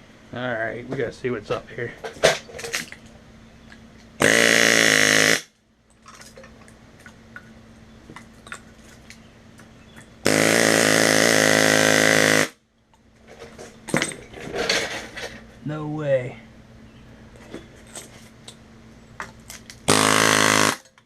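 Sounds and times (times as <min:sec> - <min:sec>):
power tool humming: 0:04.2 - 0:05.5, 0:10.2 - 0:12.6, 0:19.9 - 0:20.9.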